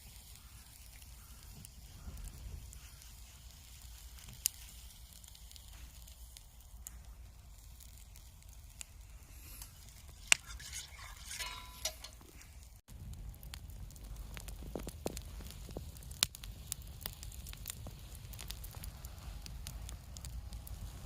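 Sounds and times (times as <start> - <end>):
food sizzling over campfire: 0.0 - 21.0
sharp pops: 9.6 - 12.6
short rattle: 10.1 - 12.6.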